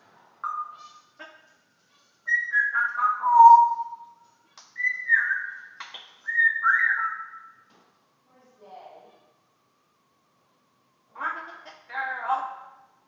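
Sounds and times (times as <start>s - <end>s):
parrot whistling: 0.4s - 1.3s, 2.3s - 4.2s, 4.8s - 7.7s.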